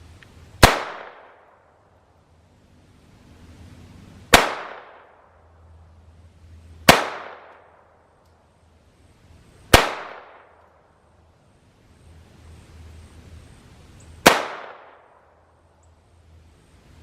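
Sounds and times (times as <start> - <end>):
pistol shots: 0.6 - 1.6, 4.3 - 5.2, 6.9 - 7.8, 9.7 - 10.6, 14.2 - 15.2.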